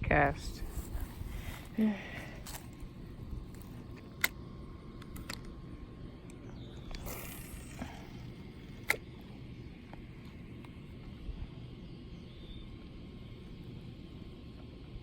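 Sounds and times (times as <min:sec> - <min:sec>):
sharp clicks: 0:03.5 - 0:04.4, 0:05.0 - 0:05.6, 0:06.2 - 0:09.1.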